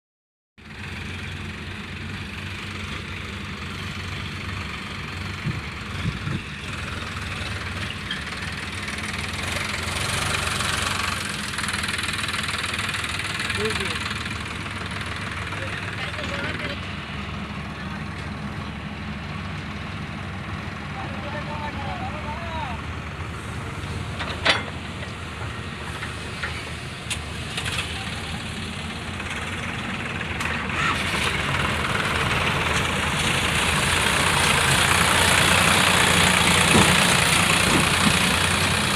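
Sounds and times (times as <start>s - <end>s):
heavy diesel engine running: 0.6s - 38.9s.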